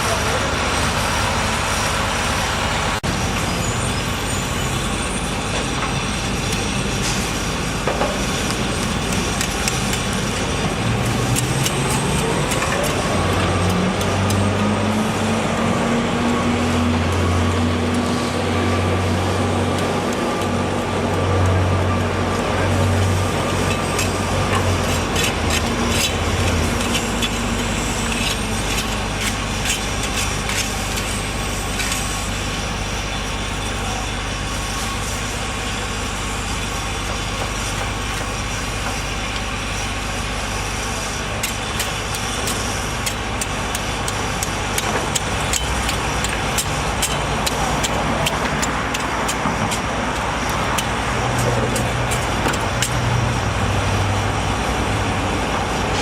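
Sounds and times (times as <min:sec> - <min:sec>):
sharp clicks and knocks: 0:41.4 - 0:53.1.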